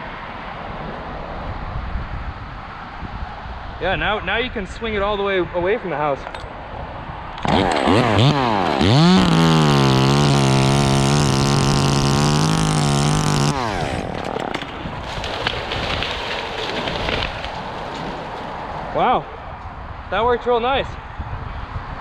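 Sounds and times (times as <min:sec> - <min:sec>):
chainsaw cutting at high revs: 0:07.4 - 0:17.6.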